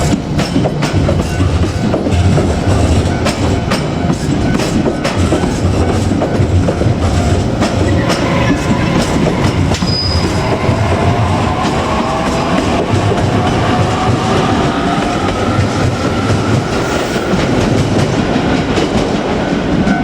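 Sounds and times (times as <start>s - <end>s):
train rumbling on rails: 0.0s - 20.0s
wheels clacking over rail joints: 0.0s - 20.0s
rising whine: 7.0s - 17.6s.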